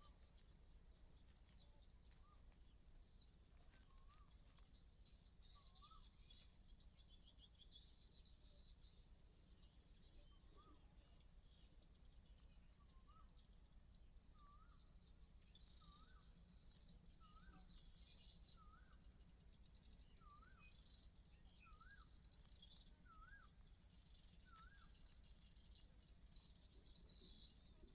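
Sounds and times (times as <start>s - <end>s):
birds warbling: 1.0s - 4.5s
sharp high bird chirps: 1.0s - 4.6s.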